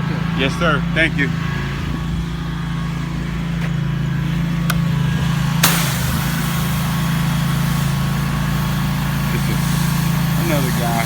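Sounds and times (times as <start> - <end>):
pressure washer engine running: 0.0 - 11.0
hiss of spraying water: 5.2 - 11.0.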